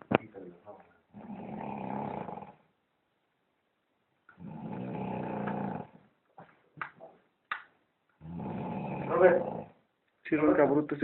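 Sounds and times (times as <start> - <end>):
man snoring heavily: 1.2 - 2.6, 4.4 - 6.0, 8.2 - 9.8.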